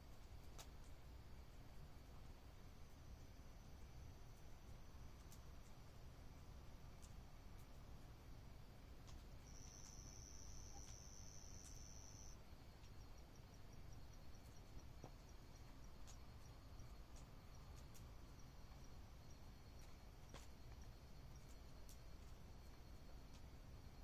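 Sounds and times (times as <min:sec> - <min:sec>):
insect high chirps: 0:09.4 - 0:12.4.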